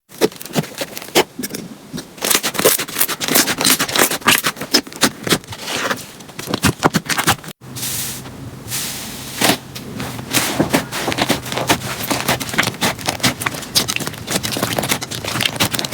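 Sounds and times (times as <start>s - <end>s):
low steady hum: 7.6s - 15.9s
slime crackling and popping: 11.1s - 15.9s.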